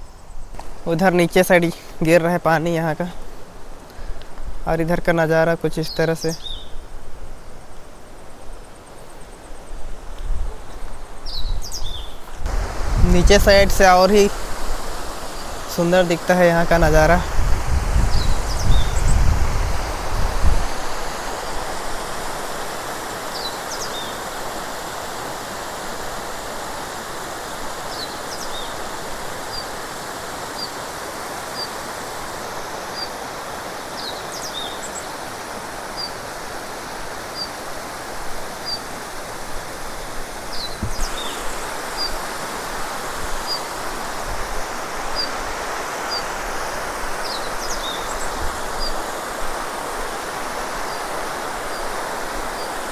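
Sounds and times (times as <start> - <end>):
waterfall rushing: 12.3 - 52.9.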